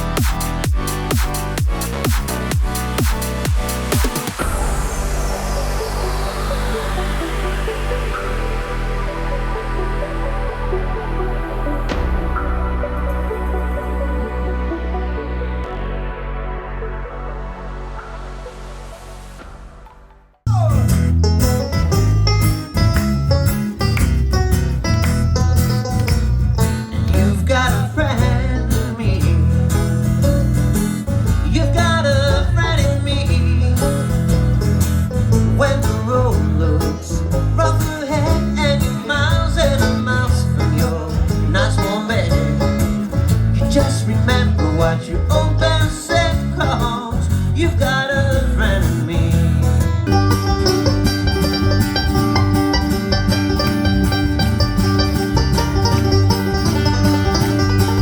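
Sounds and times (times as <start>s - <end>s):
country music with plucked strings: 20.5s - 58.0s.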